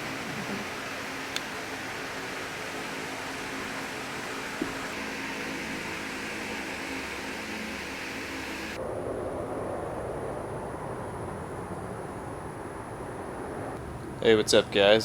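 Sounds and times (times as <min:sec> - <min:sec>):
mechanical whirring with hum: 0:00.0 - 0:08.8
steady rushing noise: 0:00.0 - 0:10.9.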